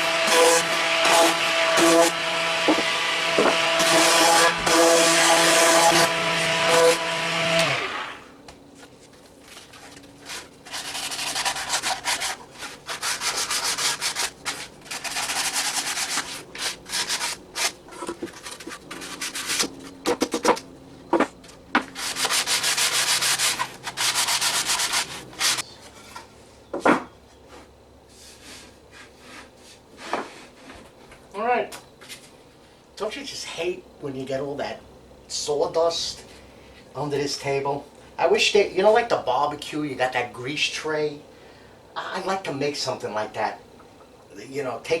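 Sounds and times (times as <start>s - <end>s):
power tool motor winding down: 0.0s - 8.3s
sandpaper rubbing on wood: 10.2s - 19.7s, 22.0s - 25.6s.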